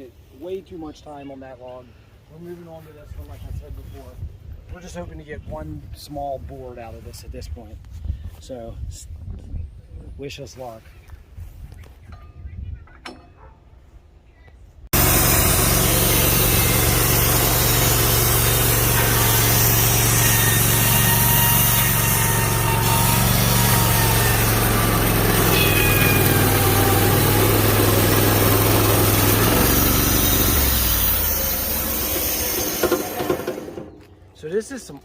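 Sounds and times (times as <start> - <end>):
band sawmill cutting log: 14.9 - 34.1.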